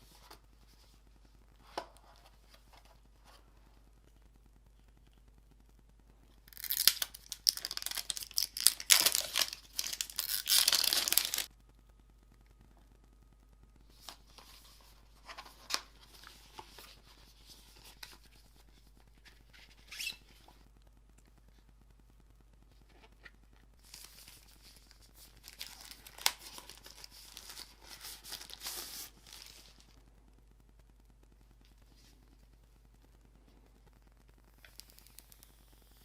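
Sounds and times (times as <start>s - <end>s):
packaging tearing and crinkling: 6.5s - 11.5s, 23.8s - 29.6s.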